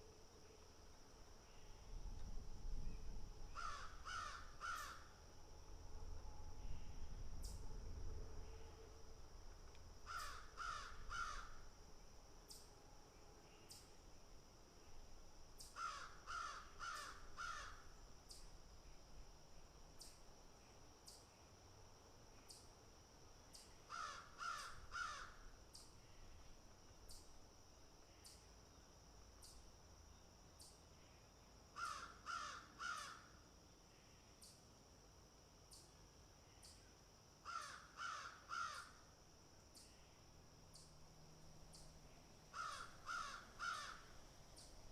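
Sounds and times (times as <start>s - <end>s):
crow cawing: 3.6s - 5.1s, 10.1s - 11.6s, 15.8s - 17.9s, 23.9s - 25.4s, 31.8s - 33.3s, 37.5s - 39.0s, 42.5s - 44.1s.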